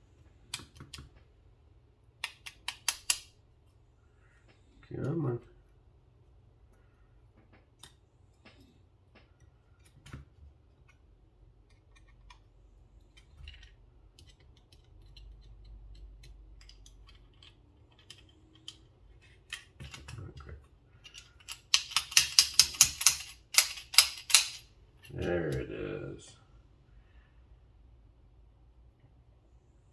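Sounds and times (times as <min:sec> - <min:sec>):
small metal parts clicking: 0:02.2 - 0:03.3, 0:11.7 - 0:25.6.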